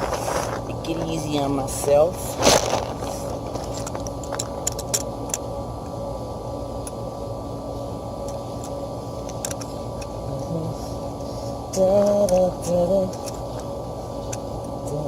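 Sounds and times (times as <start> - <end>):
steady mechanical hum: 0.0 - 15.0
metal parts clicking: 3.6 - 5.4, 9.3 - 9.7.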